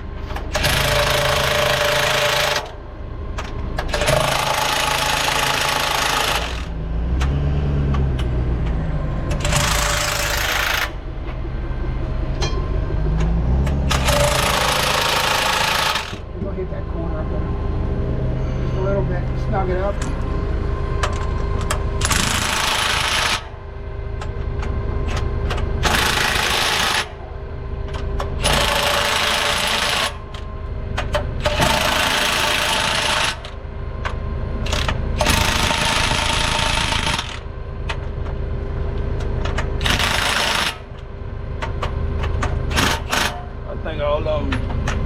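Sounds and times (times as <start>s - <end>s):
impact wrench hammering: 12.4s - 16.3s.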